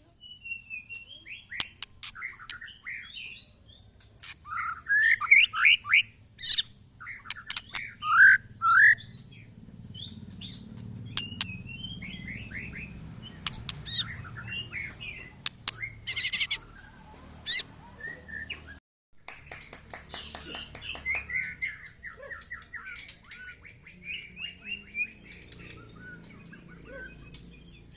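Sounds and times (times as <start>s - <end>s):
bird singing whistled phrases: 0.2s - 3.8s, 4.5s - 9.2s, 11.1s - 18.8s, 20.9s - 27.9s
bird rattling trill: 5.3s - 9.2s, 9.9s - 14.3s, 15.3s - 16.6s.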